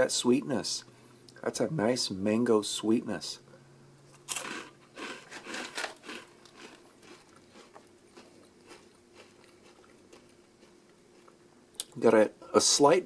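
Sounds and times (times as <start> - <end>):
chewing crunchy crisps: 4.1 - 11.9.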